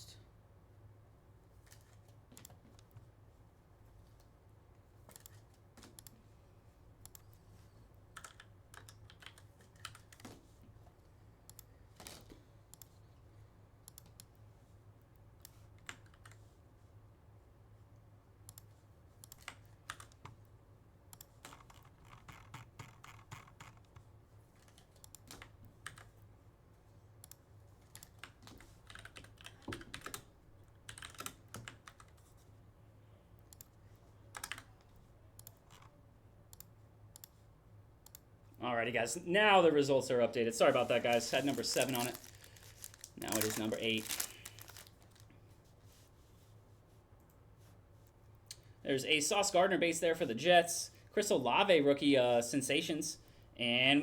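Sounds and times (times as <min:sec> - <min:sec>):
typing on keyboard: 0:08.1 - 0:10.3, 0:19.2 - 0:20.4, 0:21.2 - 0:26.2, 0:27.2 - 0:32.3, 0:34.3 - 0:34.8
low steady hum: 0:23.6 - 0:54.0.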